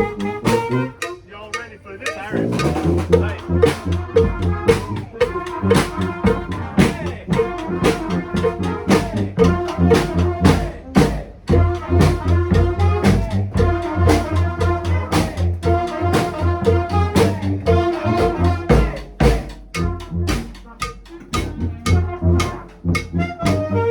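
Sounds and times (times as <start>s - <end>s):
brass band playing: 0.0s - 23.9s
driving drum beat: 0.0s - 23.9s
horns holding notes: 0.0s - 23.9s.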